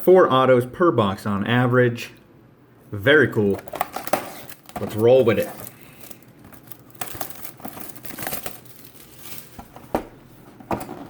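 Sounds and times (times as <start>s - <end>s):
plastic wrapping crinkling and tearing: 3.5s - 9.8s.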